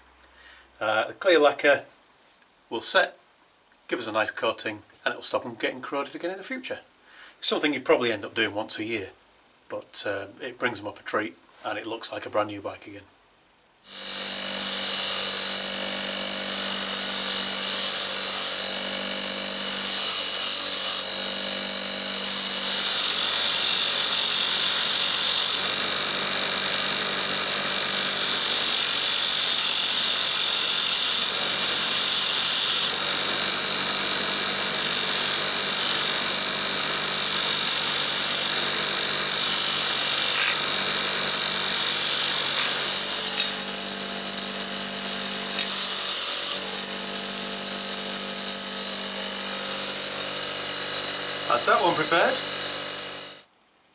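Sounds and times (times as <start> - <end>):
power tool scouring metal: 13.9 - 53.5.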